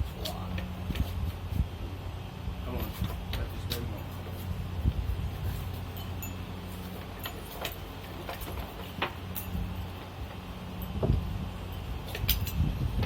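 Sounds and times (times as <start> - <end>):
metallic tool clinks: 5.8 - 6.5.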